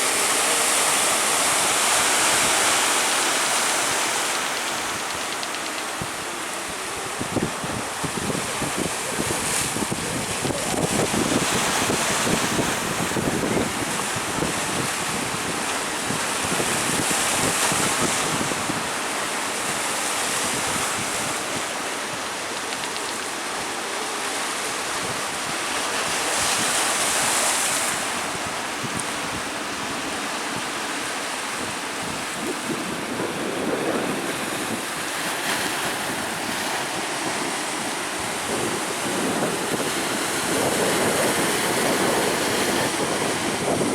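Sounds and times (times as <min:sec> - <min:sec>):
wind buffeting microphone: 0:04.8 - 0:22.4, 0:31.5 - 0:43.9
surf breaking: 0:31.5 - 0:43.9.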